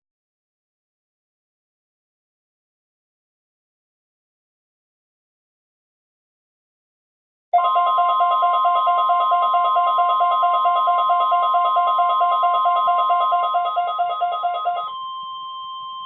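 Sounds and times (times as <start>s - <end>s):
rapid pulsing beep: 7.6s - 16.0s
steady high warning tone: 7.6s - 16.0s.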